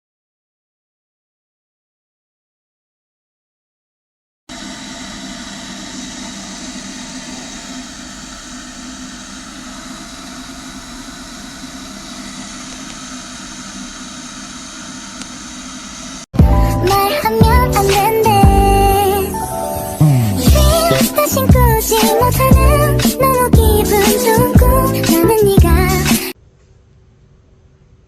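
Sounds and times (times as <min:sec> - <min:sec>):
electric kettle heating water: 0:04.5 - 0:16.3.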